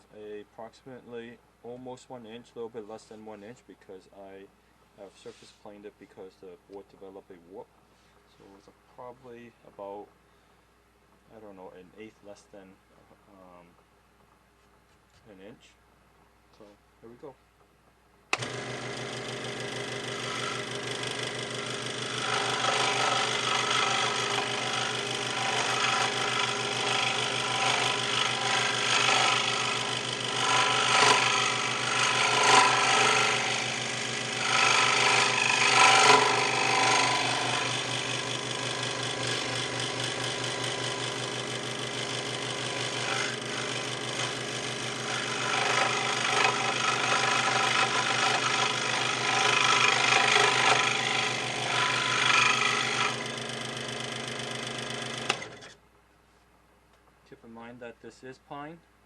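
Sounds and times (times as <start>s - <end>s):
scroll saw cutting wood: 18.3s - 55.8s.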